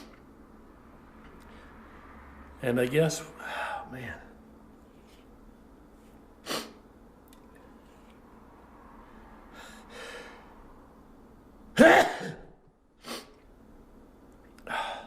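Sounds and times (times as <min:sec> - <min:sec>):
man sneezing: 0:06.4 - 0:06.8, 0:11.8 - 0:13.4
man sniffing: 0:06.4 - 0:06.8, 0:13.0 - 0:13.4
drawn-in breath: 0:09.2 - 0:10.6.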